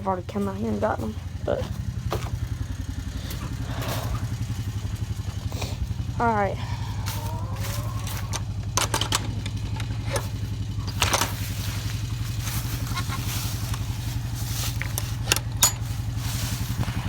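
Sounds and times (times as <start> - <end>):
engine idling: 0.0 - 17.0
sharp clicks and knocks: 8.1 - 11.4, 14.8 - 15.9.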